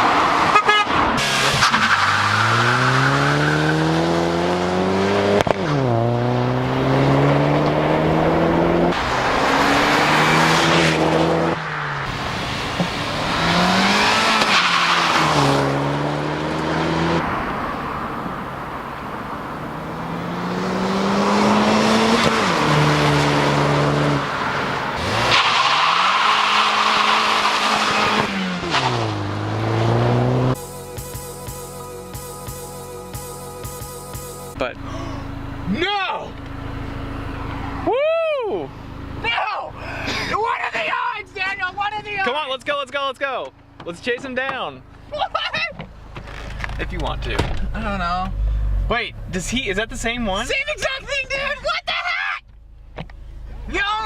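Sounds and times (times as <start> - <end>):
tires squealing: 0.0 - 30.7
car engine revving: 0.0 - 37.9.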